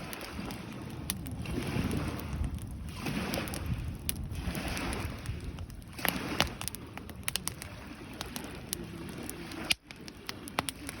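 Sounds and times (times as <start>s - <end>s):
campfire crackling: 0.0s - 11.0s
low rush of flames: 0.0s - 11.0s
sharp pops and snaps: 5.5s - 8.5s, 9.5s - 11.0s.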